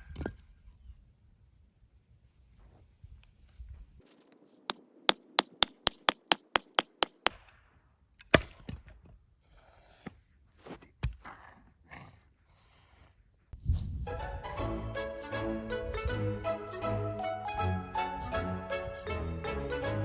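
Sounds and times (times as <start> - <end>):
heavy chopping strikes: 5.1 - 7.3
wood chopping knocks: 5.1 - 7.3.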